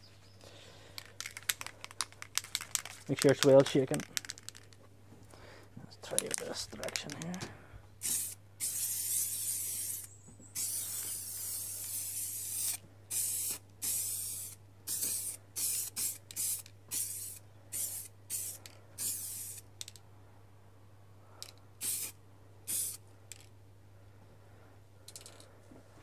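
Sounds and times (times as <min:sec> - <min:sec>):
aerosol can spraying: 0:08.0 - 0:19.6, 0:21.8 - 0:23.0.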